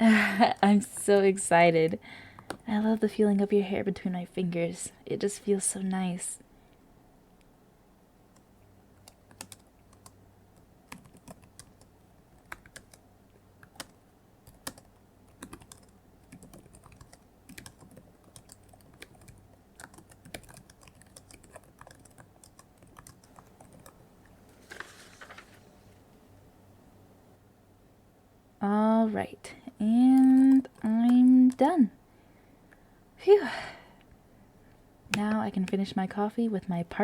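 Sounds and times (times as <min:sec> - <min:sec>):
computer keyboard key clicks: 0:10.9 - 0:13.0, 0:13.6 - 0:24.0
rustling: 0:23.5 - 0:26.1.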